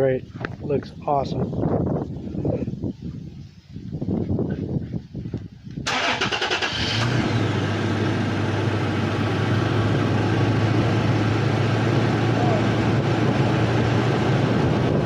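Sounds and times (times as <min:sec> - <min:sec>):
engine cranking: 0:05.9 - 0:07.5
engine idling: 0:05.9 - 0:15.0.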